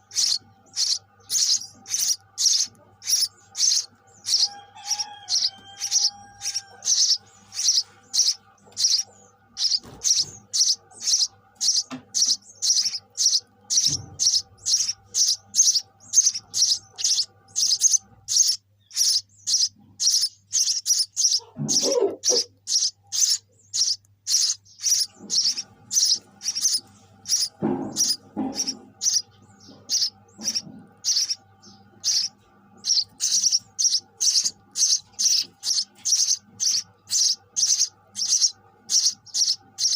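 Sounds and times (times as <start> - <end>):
sparrow chirping: 0.0 - 39.9.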